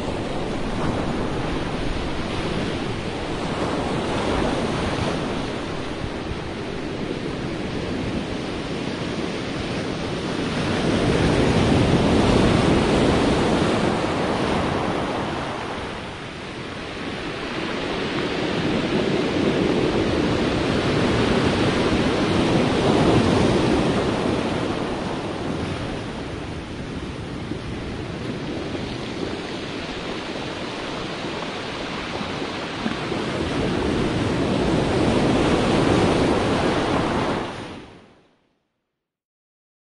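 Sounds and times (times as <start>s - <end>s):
sea waves washing onto shore: 0.0s - 38.0s
wind noise: 0.0s - 38.2s.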